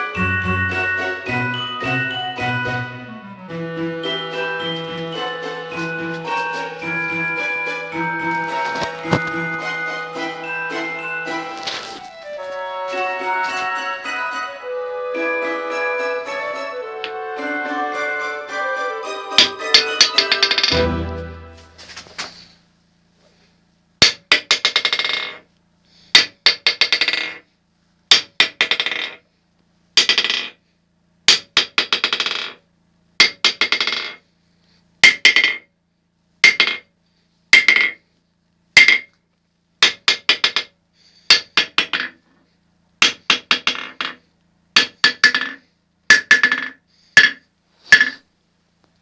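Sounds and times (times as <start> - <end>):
hammer striking steel anvil: 4.0 - 11.7.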